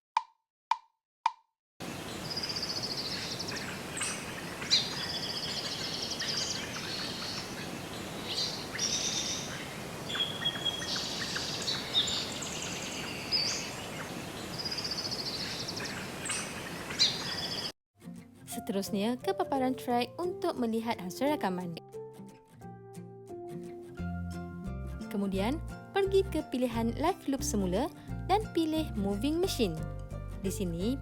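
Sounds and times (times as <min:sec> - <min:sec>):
steady outdoor hiss: 0:01.8 - 0:17.7
birds chirping and trilling: 0:01.8 - 0:17.8.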